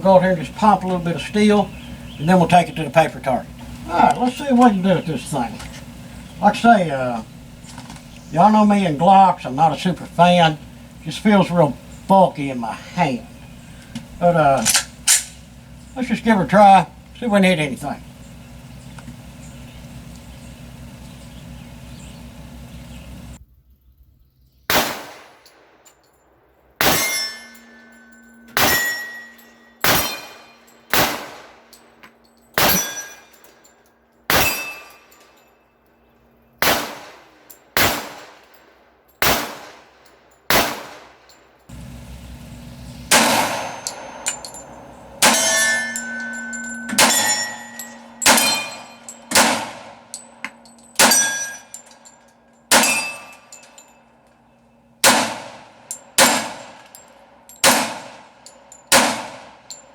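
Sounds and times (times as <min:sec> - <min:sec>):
bullet clanging on steel target: 0:03.6 - 0:19.2, 0:25.4 - 0:36.0, 0:43.1 - 0:59.9
pistol shots: 0:13.6 - 0:15.8, 0:24.7 - 0:25.6, 0:26.8 - 0:31.7, 0:32.6 - 0:33.2, 0:34.3 - 0:35.0, 0:36.6 - 0:38.6, 0:39.2 - 0:39.9, 0:40.5 - 0:51.6, 0:52.7 - 0:53.4, 0:55.0 - 0:56.8, 0:57.6 - 0:58.3, 0:58.9 - 0:59.6.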